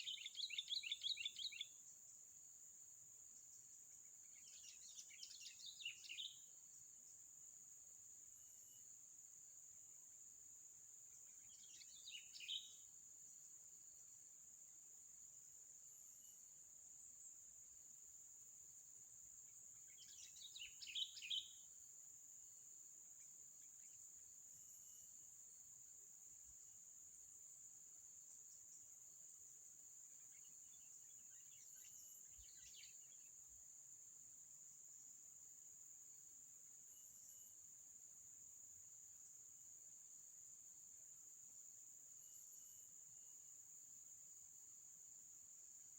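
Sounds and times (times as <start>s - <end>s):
bird chirps: 0.0s - 1.8s, 4.2s - 6.5s, 11.2s - 12.8s, 19.8s - 21.6s, 30.2s - 33.4s
insect drone: 0.0s - 45.9s.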